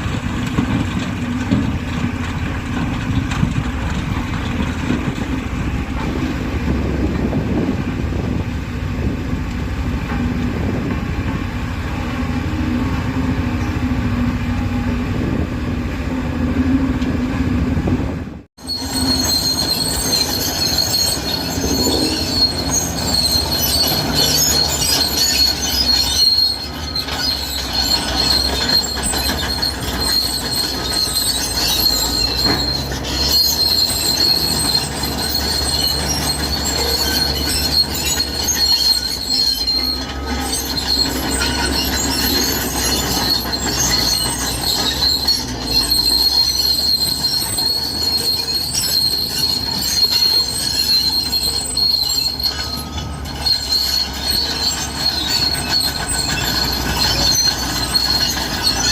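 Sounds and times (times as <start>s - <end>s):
diesel engine running: 0.0s - 58.9s
steel tracks squealing: 0.0s - 58.9s.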